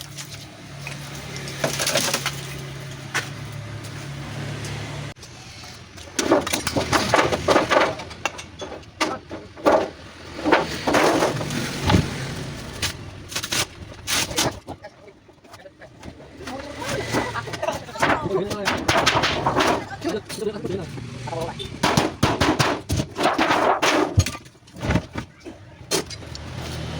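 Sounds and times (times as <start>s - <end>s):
scraping and crunching on metal scrap: 0.0s - 26.9s.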